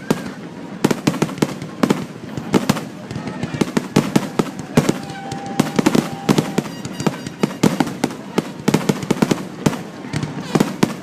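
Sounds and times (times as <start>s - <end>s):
fireworks crackle: 0.0s - 11.0s
firework shells bursting: 3.7s - 11.0s.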